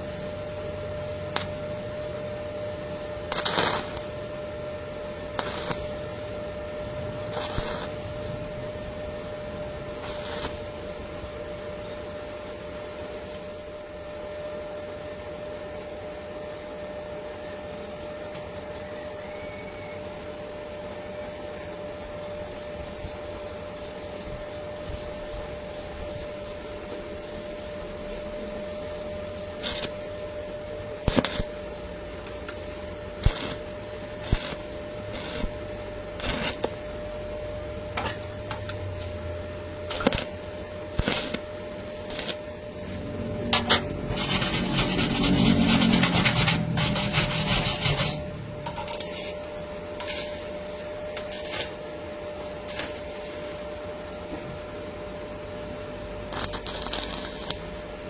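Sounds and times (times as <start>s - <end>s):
steady hum: 0.0s - 58.0s
scraping crackle: 5.4s - 5.9s, 7.3s - 8.0s, 33.2s - 33.6s, 36.2s - 36.8s, 56.3s - 57.6s.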